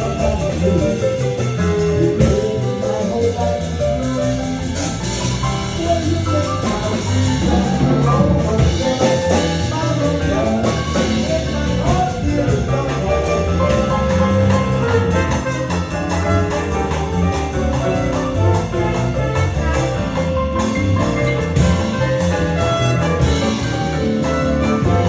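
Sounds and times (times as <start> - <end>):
live jazz band playing: 0.0 - 25.0.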